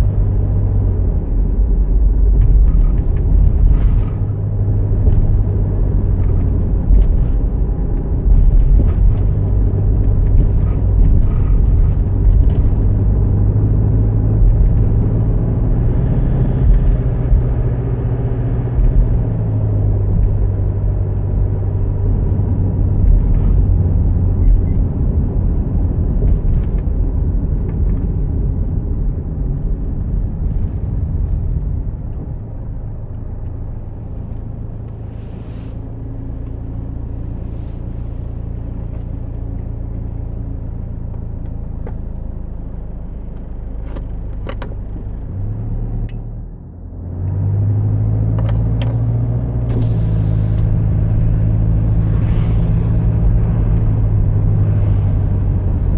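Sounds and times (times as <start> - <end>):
car engine and tyre rumble: 0.0 - 55.9.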